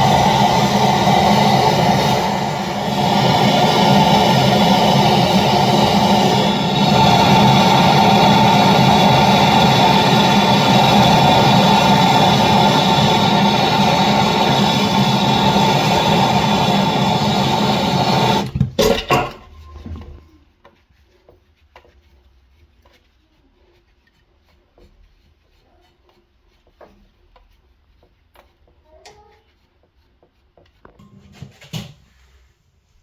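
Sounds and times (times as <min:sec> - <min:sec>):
faint clicks and taps: 0:20.0 - 0:31.1.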